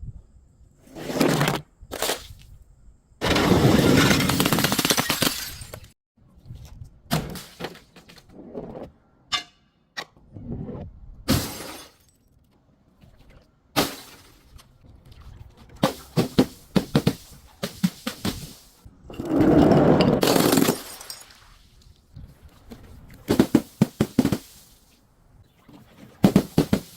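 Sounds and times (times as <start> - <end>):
glass bottles shattering: 4.1 - 5.9, 11.3 - 12.2, 20.2 - 21.4.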